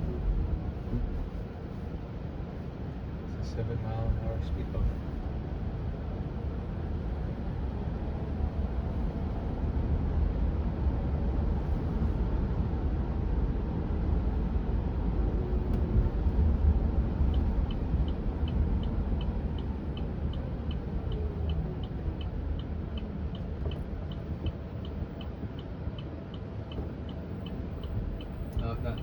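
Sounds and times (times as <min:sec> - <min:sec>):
road and tyre rumble: 0:00.0 - 0:29.0
turn signal ticking: 0:15.2 - 0:29.0.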